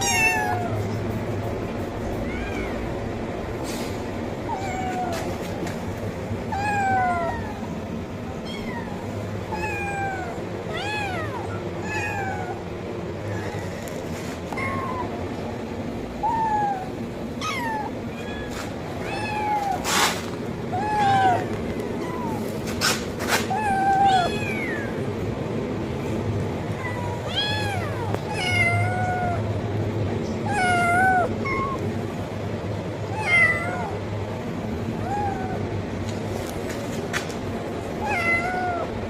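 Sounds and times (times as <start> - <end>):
kitten meowing: 0.0 - 0.9, 8.4 - 12.6, 16.2 - 22.6, 23.4 - 25.0, 26.7 - 29.4, 30.4 - 31.9, 38.0 - 38.9
low background hum: 0.0 - 39.0.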